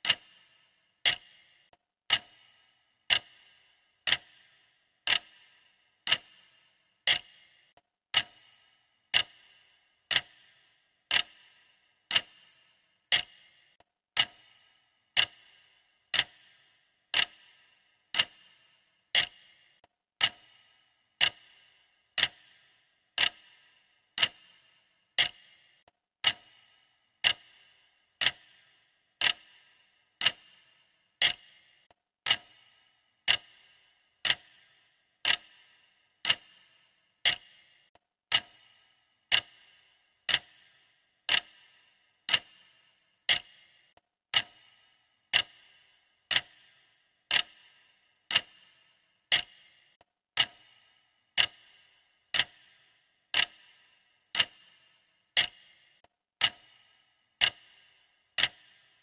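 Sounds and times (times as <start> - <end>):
clock ticking: 0.0 - 59.0.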